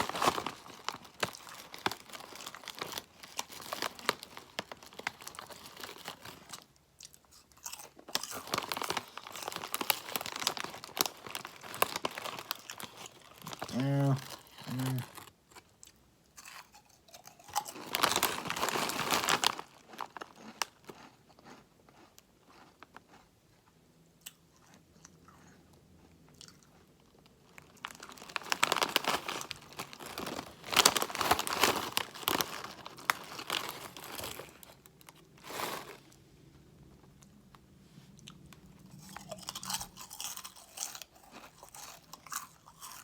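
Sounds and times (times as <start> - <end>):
chips crunching: 0.0 - 23.3, 24.3 - 36.2, 38.3 - 43.0
soft chewing: 0.8 - 10.1, 19.5 - 30.6, 32.8 - 43.0.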